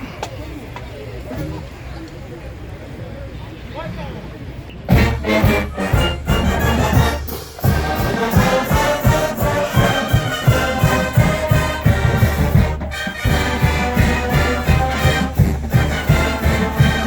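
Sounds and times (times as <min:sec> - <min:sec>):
brass melody: 0:04.9 - 0:17.0.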